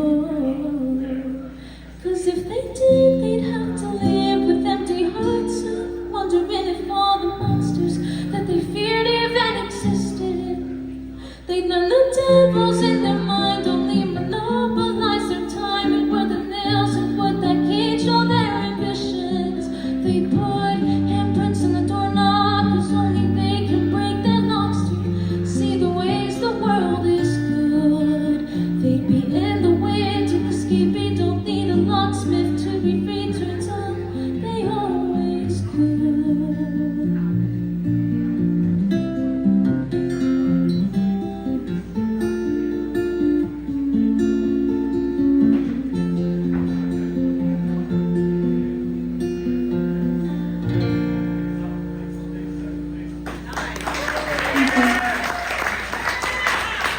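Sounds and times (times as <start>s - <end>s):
woman singing: 0.0s - 37.5s
acoustic guitar strumming: 2.3s - 53.3s.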